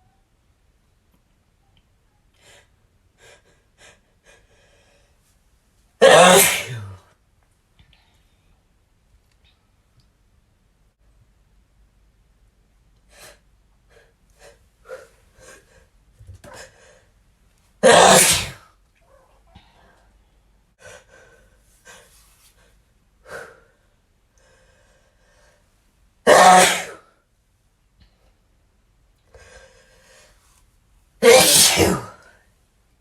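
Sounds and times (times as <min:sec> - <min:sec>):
man sneezing loudly: 0:06.0 - 0:07.0, 0:17.8 - 0:18.6, 0:26.3 - 0:27.0, 0:31.2 - 0:32.2.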